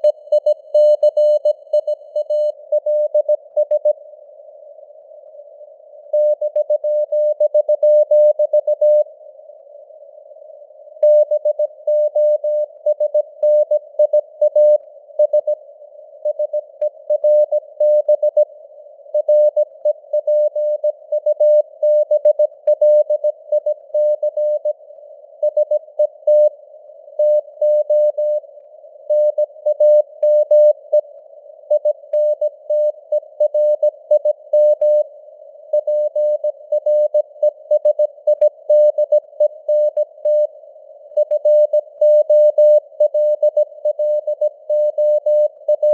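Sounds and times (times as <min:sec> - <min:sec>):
morse code beep tone: 0:00.0 - 0:04.0, 0:06.2 - 0:09.0, 0:11.0 - 0:15.6, 0:27.2 - 0:28.4, 0:29.1 - 0:31.0, 0:31.7 - 0:35.1, 0:35.8 - 0:40.5, 0:41.2 - 0:45.9.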